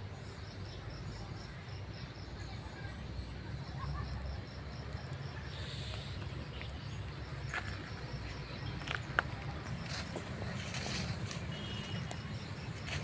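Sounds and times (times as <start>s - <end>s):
insect chirping: 9.6s - 13.0s.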